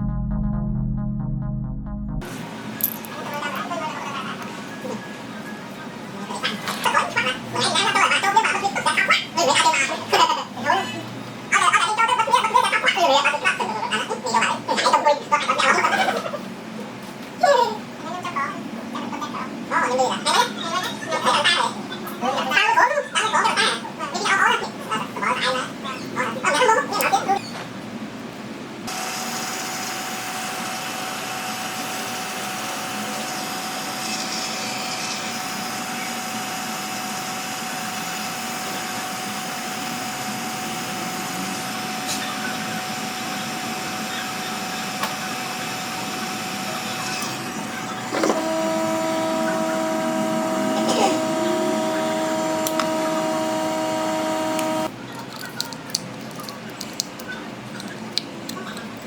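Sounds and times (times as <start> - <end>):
multi-tone hum: 0.0 - 9.7, 28.8 - 55.1
small motor whirring: 28.9 - 54.9.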